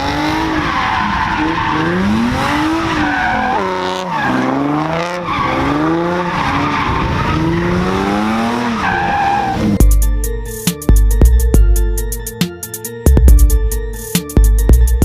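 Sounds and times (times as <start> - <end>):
car engine revving hard: 0.0 - 9.8
tyres skidding and squealing: 0.0 - 9.9.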